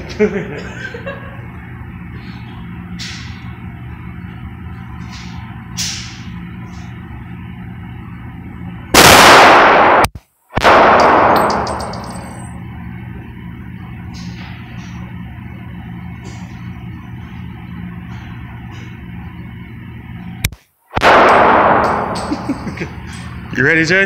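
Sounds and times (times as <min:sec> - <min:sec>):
handgun shot ringing: 0:10.7 - 0:12.3.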